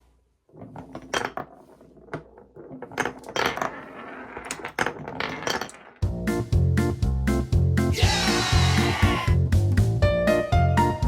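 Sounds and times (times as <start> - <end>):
marbles clattering on wooden track: 0.5 - 6.1
music: 6.0 - 11.0.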